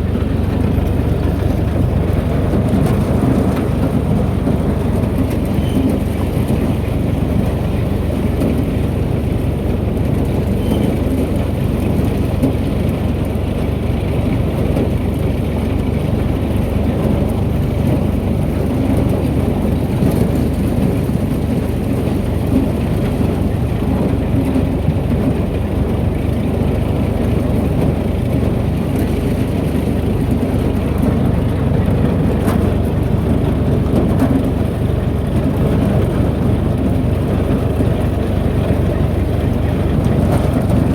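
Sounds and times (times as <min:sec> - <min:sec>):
tractor running: 0:00.0 - 0:40.9
corn elevator unloading corn: 0:14.4 - 0:40.9.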